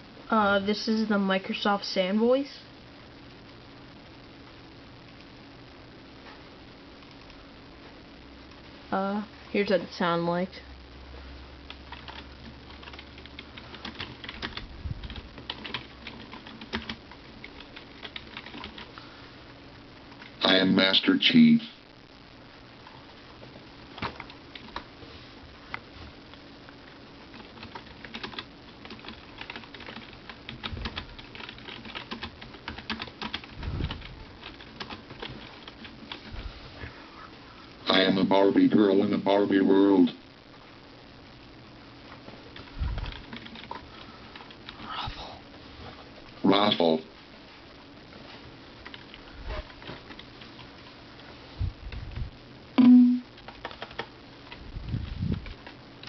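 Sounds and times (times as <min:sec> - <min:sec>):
keyboard typing: 0:11.7 - 0:18.9, 0:27.3 - 0:36.3, 0:42.6 - 0:44.8, 0:52.8 - 0:54.6
short steady low tone: 0:52.8 - 0:53.3.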